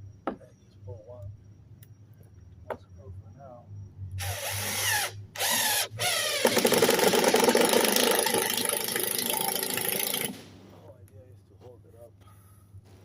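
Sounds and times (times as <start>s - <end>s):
power drill whining: 4.2s - 10.4s.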